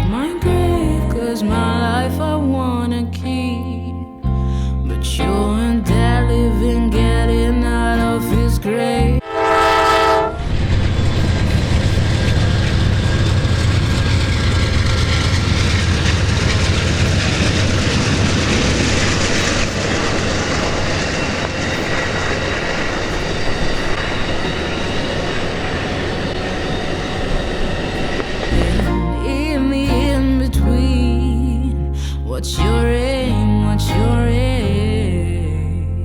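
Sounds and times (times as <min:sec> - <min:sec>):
train wheels rumbling on rail: 0:09.4 - 0:29.6.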